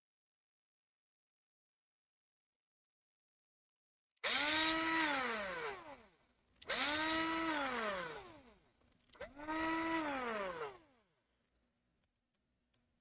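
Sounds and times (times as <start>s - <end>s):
electric screwdriver whirring: 4.2s - 11.1s.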